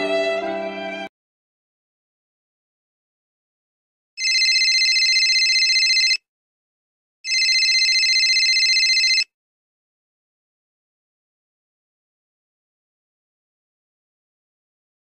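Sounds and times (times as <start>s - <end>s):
warbling electronic telephone ring: 4.2s - 6.2s, 7.3s - 9.3s.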